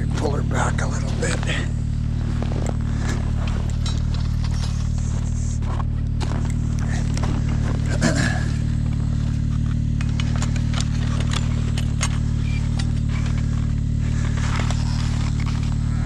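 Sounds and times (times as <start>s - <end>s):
snowmobile engine idling: 0.0s - 16.0s
brief squeak: 12.4s - 12.8s.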